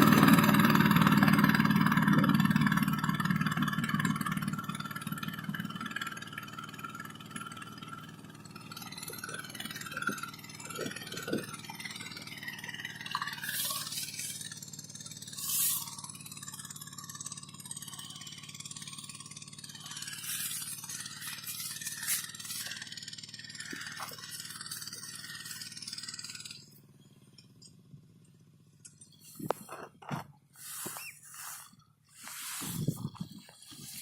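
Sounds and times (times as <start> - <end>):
milling cutter motor hum: 0.0 - 26.7
scraping hiss of cutting: 15.3 - 16.0, 20.0 - 22.8, 30.6 - 34.0.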